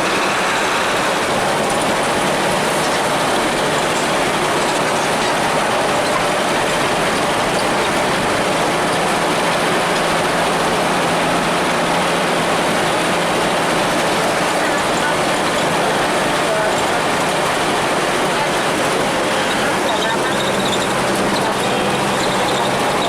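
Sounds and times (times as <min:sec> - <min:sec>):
bus diesel engine running: 0:00.0 - 0:23.0
road and cabin noise: 0:00.0 - 0:23.0.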